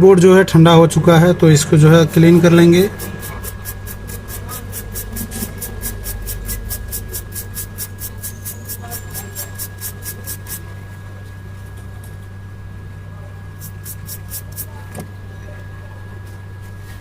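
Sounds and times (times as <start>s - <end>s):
brush scrubbing circuit board: 2.2s - 10.7s, 13.6s - 14.8s.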